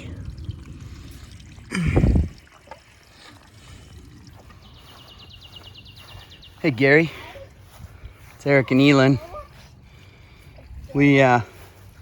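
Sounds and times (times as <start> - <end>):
waterfall trickling over rocks: 0.0 - 5.6.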